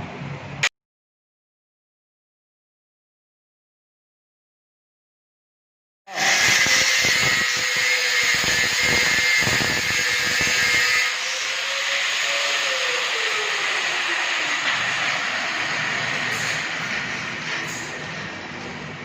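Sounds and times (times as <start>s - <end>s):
angle grinder cutting wire: 6.1s - 18.4s.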